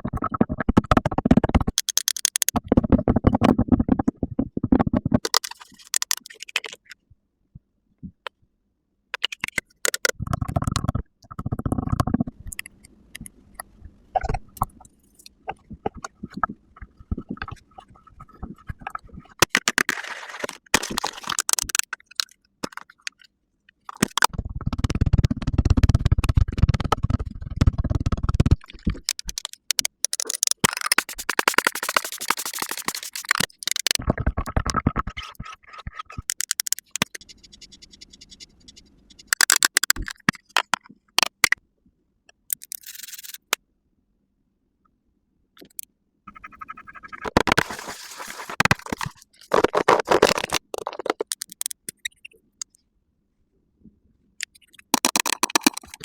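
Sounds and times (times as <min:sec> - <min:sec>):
makeup tools scraping and tapping: 0:28.2 - 0:38.2, 0:54.4 - 0:56.0.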